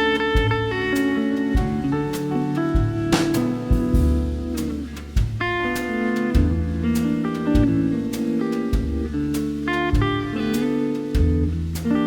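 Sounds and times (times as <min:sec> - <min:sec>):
bass line: 0:00.0 - 0:12.0
plucked guitar notes: 0:00.0 - 0:12.0.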